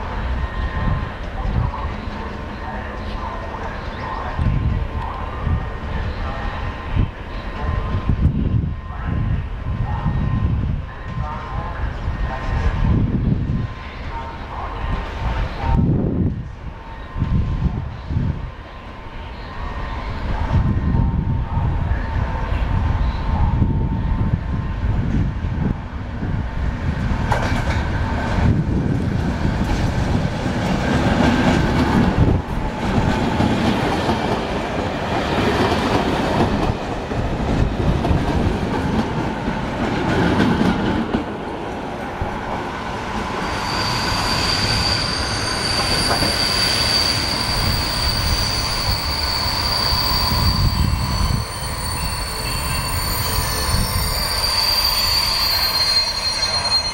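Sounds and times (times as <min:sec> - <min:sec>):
high squeal of train brakes: 0:00.1 - 0:01.2, 0:43.1 - 0:56.9.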